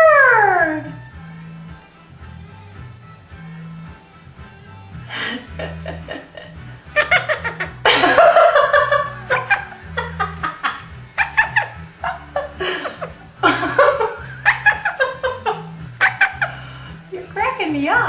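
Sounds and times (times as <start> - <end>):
parrot chuckling calls: 5.1 - 16.9.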